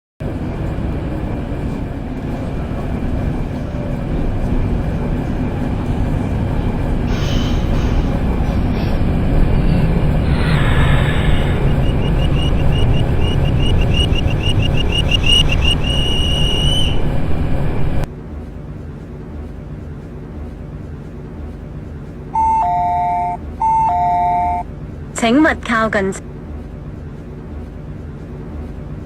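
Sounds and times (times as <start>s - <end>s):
train wheels rumbling on rail: 0.2s - 24.0s, 24.7s - 29.0s
fast high ticking: 2.4s - 17.9s.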